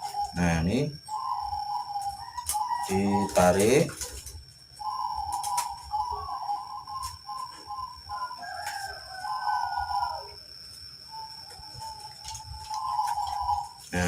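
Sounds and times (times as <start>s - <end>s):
rooster crowing: 8.1s - 10.6s.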